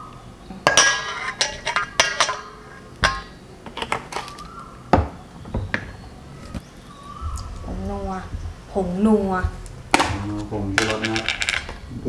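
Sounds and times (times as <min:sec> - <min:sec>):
spoon clinking against a bowl: 0:00.6 - 0:04.5.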